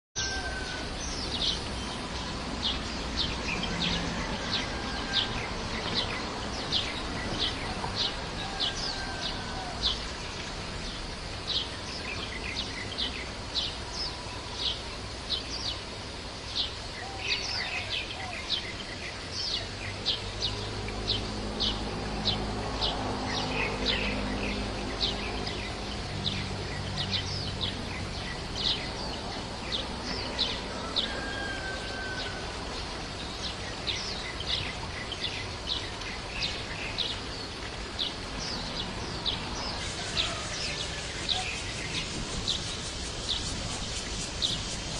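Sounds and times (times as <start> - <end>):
background noise: 0.2 - 44.9.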